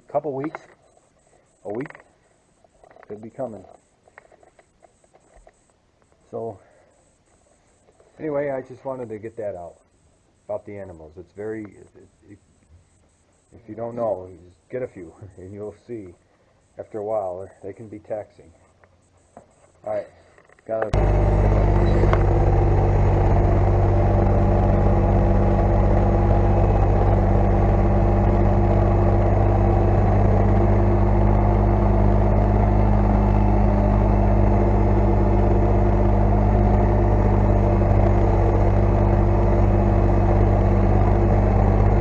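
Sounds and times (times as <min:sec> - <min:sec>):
engine idling: 0:21.0 - 0:42.0.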